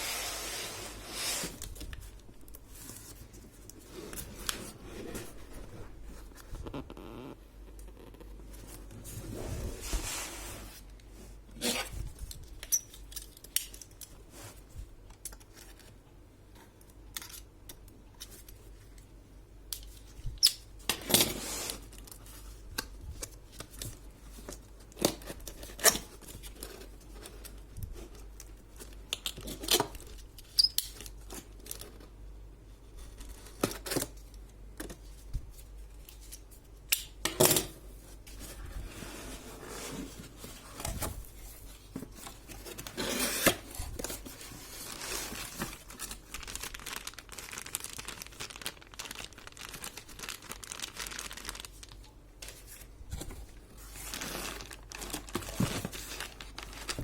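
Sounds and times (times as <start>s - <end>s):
packaging clicks and rustles: 40.2s - 57.0s.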